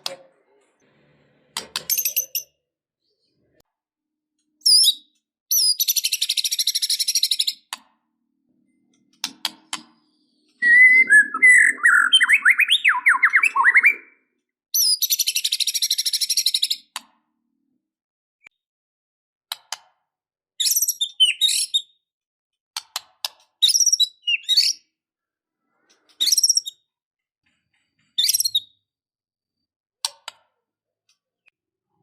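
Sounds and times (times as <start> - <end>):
bird singing trills and whistles: 4.6 - 7.6, 10.1 - 14.2, 14.8 - 16.9, 20.6 - 22.0, 23.6 - 24.8, 26.2 - 26.8, 28.2 - 28.8.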